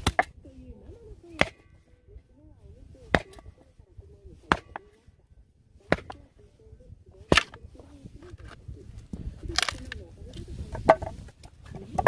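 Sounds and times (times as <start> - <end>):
firewood being chopped: 0.0 - 0.4, 1.3 - 1.8, 3.1 - 3.6, 4.4 - 5.0, 5.8 - 6.3, 7.3 - 10.0, 10.7 - 12.0.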